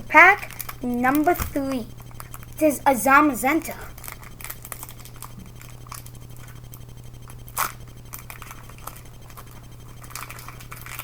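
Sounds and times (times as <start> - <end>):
steady low hum: 0.0 - 11.0
foil wrapper crackle: 0.5 - 1.2, 4.0 - 6.2, 7.5 - 11.0.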